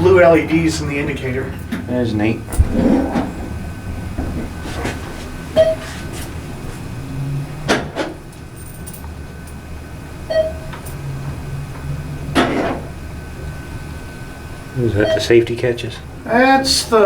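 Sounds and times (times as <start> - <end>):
elevator motor hum: 0.0 - 17.0
short elevator tones: 1.4 - 7.7, 10.2 - 15.6
elevator door scraping rub: 2.5 - 8.2, 12.4 - 13.0.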